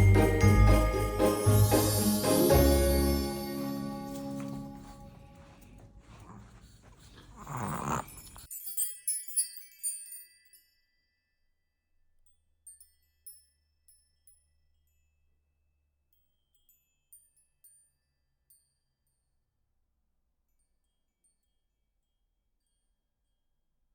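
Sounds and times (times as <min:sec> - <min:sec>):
faint high chiming music: 0:00.0 - 0:05.6.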